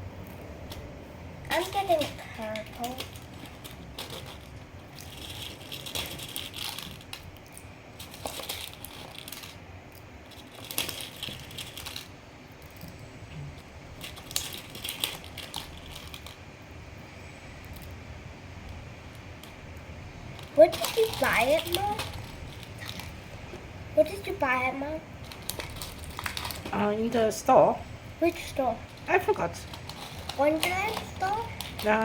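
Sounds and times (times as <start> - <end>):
small plastic objects rattling: 0.6 - 13.0, 13.9 - 16.4, 20.3 - 23.4, 24.0 - 27.2, 28.2 - 32.0.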